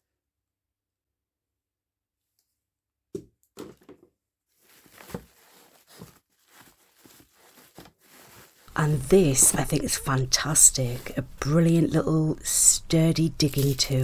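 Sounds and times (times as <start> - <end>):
soft rustling and handling: 3.6 - 11.6.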